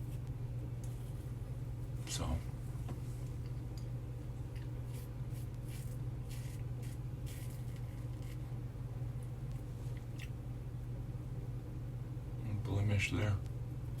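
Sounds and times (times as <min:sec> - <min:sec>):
steady low hum: 0:00.0 - 0:14.0
razor scraping stubble: 0:04.8 - 0:08.5.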